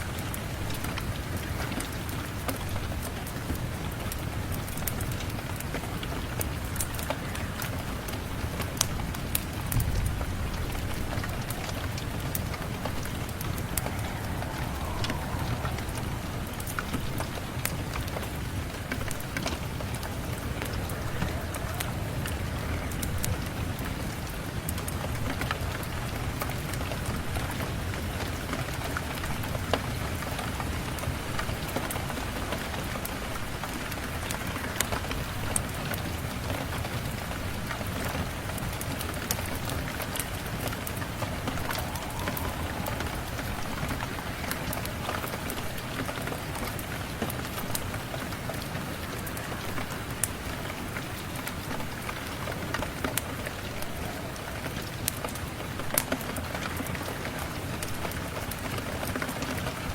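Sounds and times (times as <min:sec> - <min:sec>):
fireplace crackling and popping: 0:00.0 - 0:25.6, 0:38.4 - 0:59.3
steady rain falling: 0:00.0 - 0:59.9.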